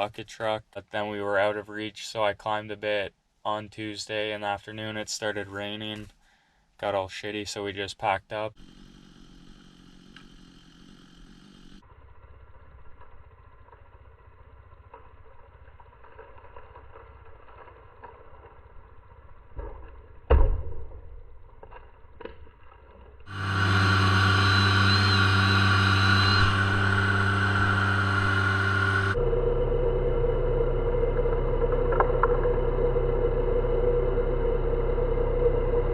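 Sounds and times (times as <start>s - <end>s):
engine running steadily: 8.6s - 15.3s, 23.3s - 35.9s.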